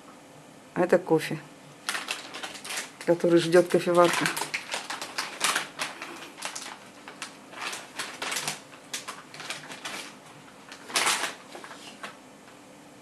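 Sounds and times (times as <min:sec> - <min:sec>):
rustling and clicking handling: 0:01.8 - 0:12.6
loud crackle: 0:04.0 - 0:10.1.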